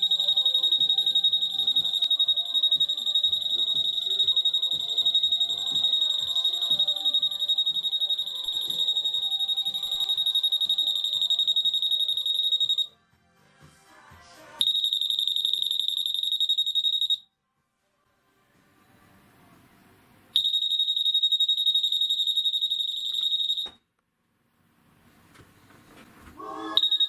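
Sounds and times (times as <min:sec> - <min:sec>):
security gate alarm tone: 0:00.0 - 0:12.9, 0:14.6 - 0:17.3, 0:20.4 - 0:23.8, 0:26.4 - 0:27.0.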